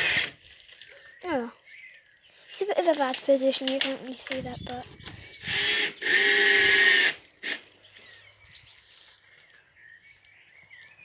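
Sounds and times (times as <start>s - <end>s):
birds chirping faintly: 0.0s - 11.0s
electric screwdriver motor whine: 4.6s - 7.6s.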